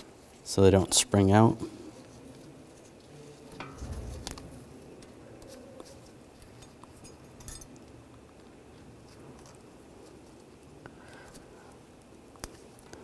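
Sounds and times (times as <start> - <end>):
low bump: 3.6 - 5.4.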